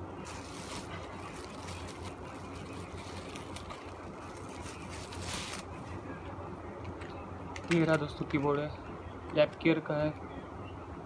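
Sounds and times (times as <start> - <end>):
background hum and hiss: 0.0 - 11.0
packaging rustling: 0.2 - 6.0.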